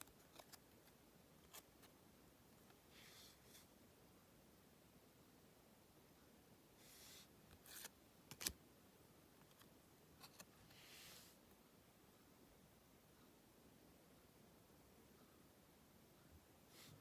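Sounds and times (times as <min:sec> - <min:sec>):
cards sliding swishes: 0:06.8 - 0:08.5, 0:10.3 - 0:11.4.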